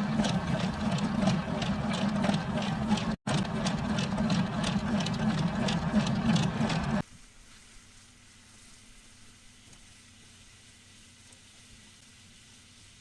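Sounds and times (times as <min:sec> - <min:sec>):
machine motor humming: 0:00.0 - 0:07.0
faint steady hiss: 0:07.0 - 0:13.0.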